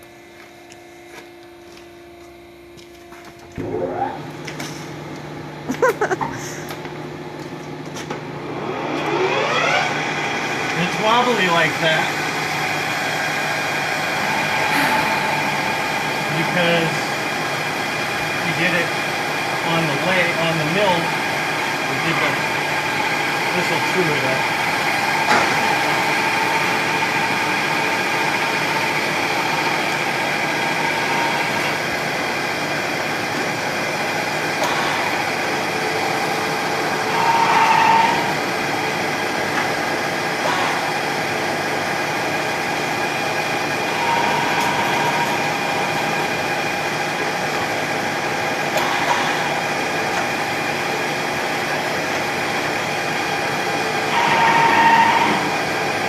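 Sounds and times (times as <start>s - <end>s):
metal lathe whining: 8.4s - 56.0s
cutting tool squeal: 37.1s - 38.5s, 43.8s - 45.6s, 54.1s - 55.6s.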